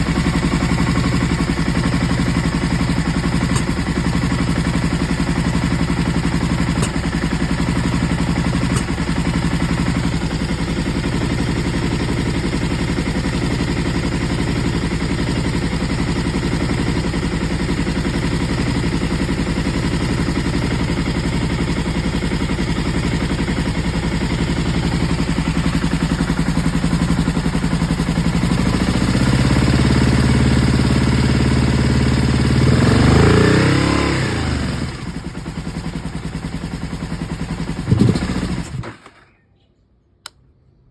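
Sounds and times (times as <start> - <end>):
motorcycle engine idling with misfire: 0.0 - 39.4.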